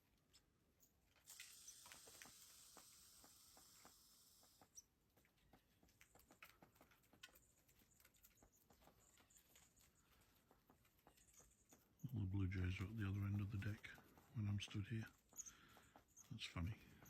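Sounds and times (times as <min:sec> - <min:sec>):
squirrels gnawing clicks and scratching: 0:00.0 - 0:17.0
soft hiss: 0:01.2 - 0:04.8.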